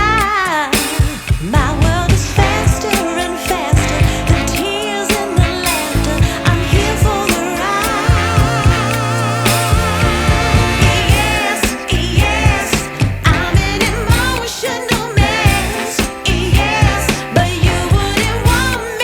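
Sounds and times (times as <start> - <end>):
pop soul song with vocal: 0.0 - 19.0.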